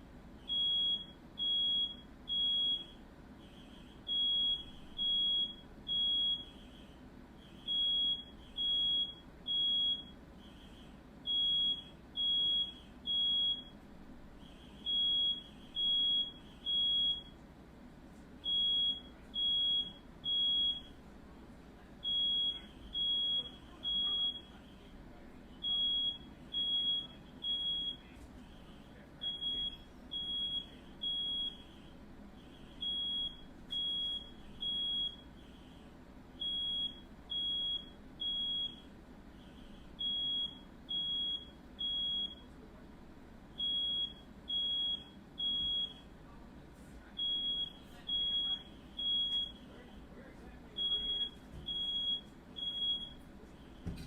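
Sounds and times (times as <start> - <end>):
smoke alarm beeping: 0.4 - 13.8, 14.4 - 17.4, 18.4 - 21.0, 22.0 - 25.0, 25.6 - 42.5, 43.6 - 46.2, 47.2 - 49.8, 50.7 - 54.0.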